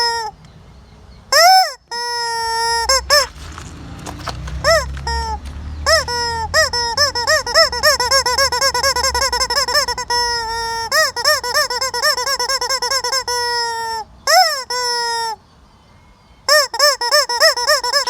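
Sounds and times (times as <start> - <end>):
rubber squeaky toy squeaking: 0.0 - 0.4, 1.3 - 15.4, 16.5 - 18.0.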